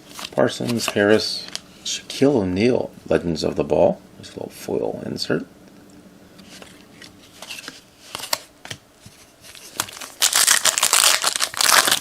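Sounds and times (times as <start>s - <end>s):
foil wrapper crinkling as torn open: 9.6s - 12.0s.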